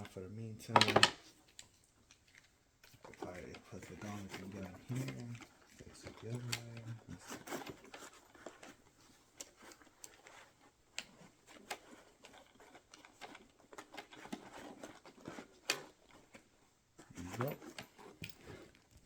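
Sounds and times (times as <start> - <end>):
tools clicking and knocking: 0.7 - 1.6.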